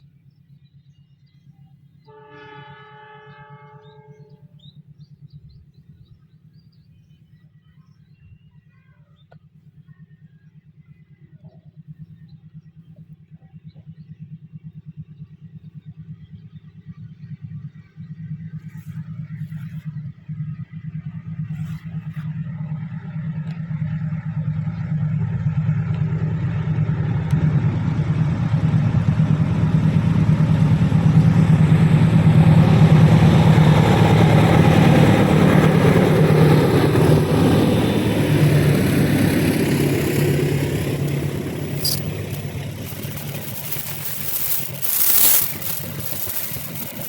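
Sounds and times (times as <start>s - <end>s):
diesel locomotive engine drone: 11.8s - 47.0s
train passing on rails: 26.1s - 47.0s
sharp metallic clatters: 39.8s - 47.0s.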